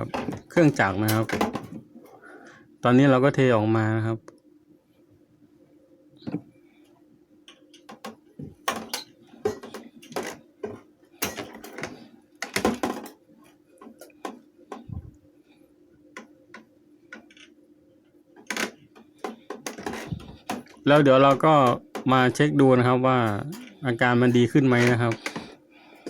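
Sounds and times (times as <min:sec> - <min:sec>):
fan parts clicking and clattering: 0:00.0 - 0:01.9, 0:07.5 - 0:13.2, 0:18.4 - 0:26.0
faint steady hum: 0:00.0 - 0:26.0.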